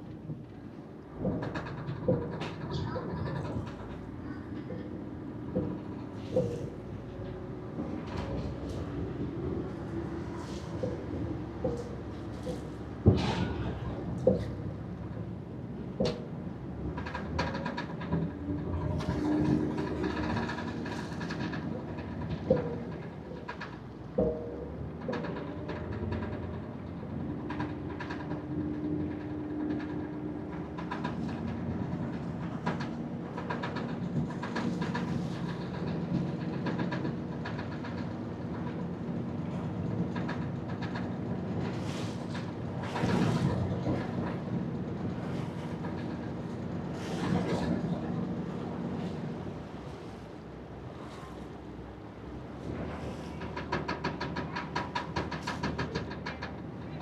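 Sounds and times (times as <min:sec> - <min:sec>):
boat engine humming: 0:41.2 - 0:53.6.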